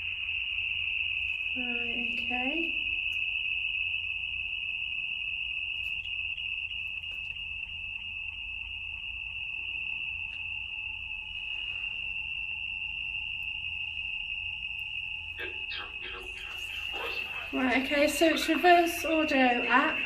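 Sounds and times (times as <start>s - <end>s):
high-pitched electronic tone: 15.4s - 20.0s.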